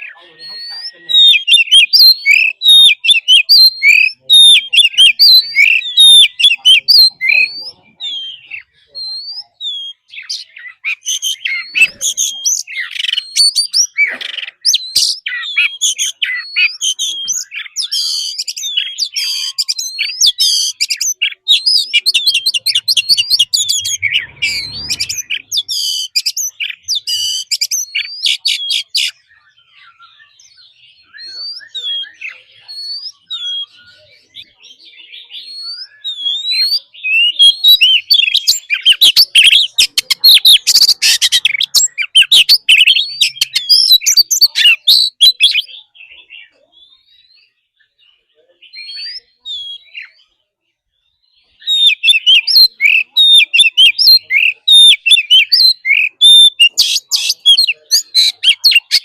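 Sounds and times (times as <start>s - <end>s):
bird whistles and chirps: 0.0s - 50.4s, 51.3s - 59.0s.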